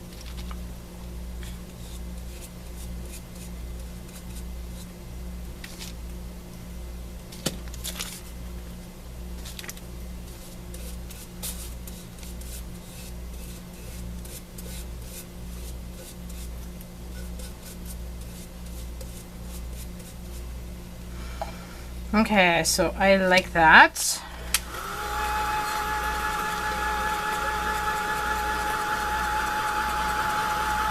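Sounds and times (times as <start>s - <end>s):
paper rustling and rubbing: 9.4s - 20.5s.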